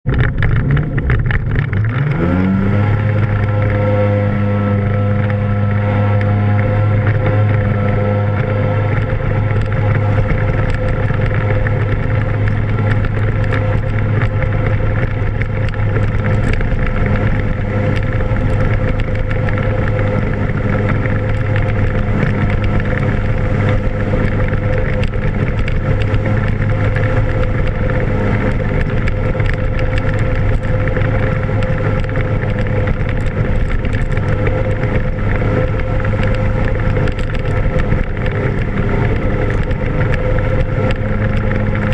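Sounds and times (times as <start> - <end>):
rotary boat engine running: 0.0 - 41.9.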